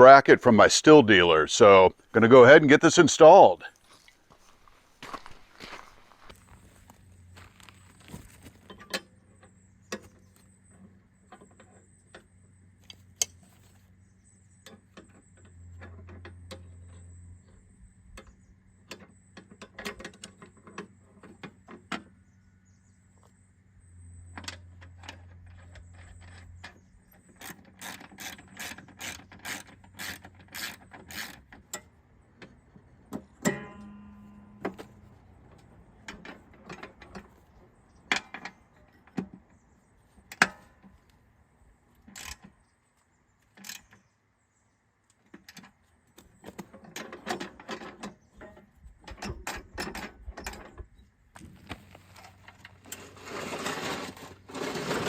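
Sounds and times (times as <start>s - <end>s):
metal clicks and knocks: 27.4s - 39.5s, 45.3s - 51.0s.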